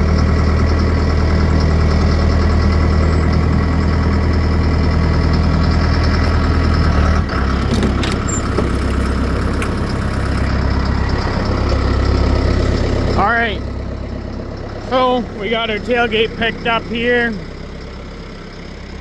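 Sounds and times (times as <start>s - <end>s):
engine idling: 0.0s - 19.0s.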